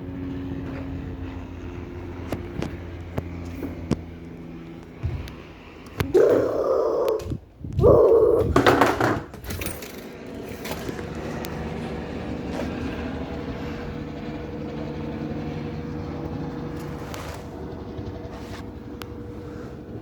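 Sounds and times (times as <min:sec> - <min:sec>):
helicopter droning overhead: 0:00.0 - 0:20.0.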